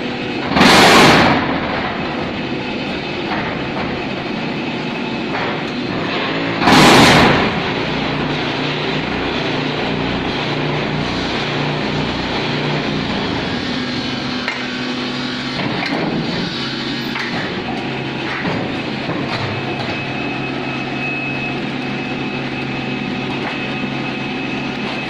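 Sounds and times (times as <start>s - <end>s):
machine hum and rattle: 0.0s - 25.0s
loud clattering bang: 0.4s - 4.5s, 5.3s - 8.5s, 15.5s - 20.0s.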